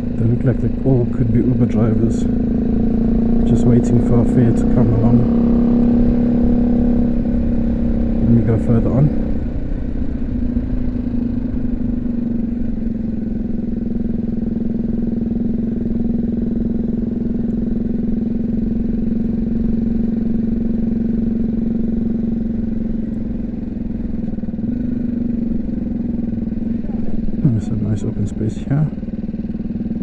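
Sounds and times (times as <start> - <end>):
low wind rumble: 0.0 - 14.8
motorcycle engine running: 0.0 - 30.0.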